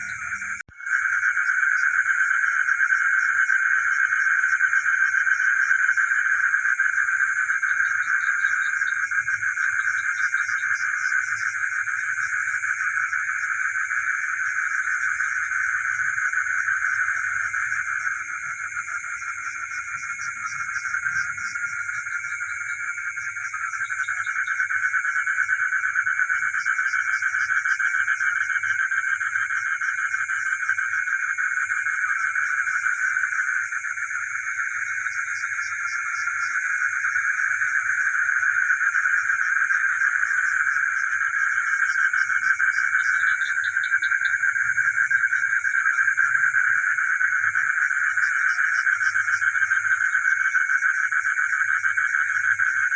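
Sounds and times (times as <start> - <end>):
frogs chorus: 0.0 - 52.9.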